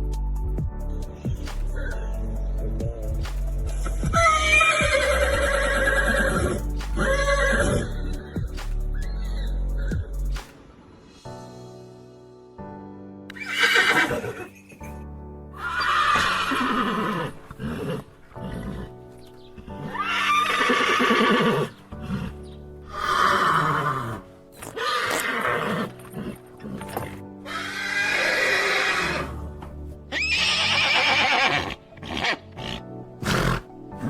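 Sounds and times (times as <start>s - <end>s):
background music: 0.0s - 34.0s
horses neighing: 4.2s - 8.0s, 13.3s - 14.6s, 15.6s - 19.0s, 19.8s - 29.4s, 30.1s - 33.7s.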